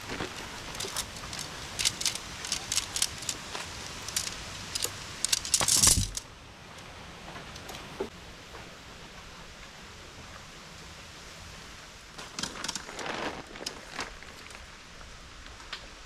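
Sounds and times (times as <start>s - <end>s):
scrape or rustle: 0.0s - 6.2s, 12.2s - 14.7s
light sharp clicks and clinks: 0.2s - 6.3s.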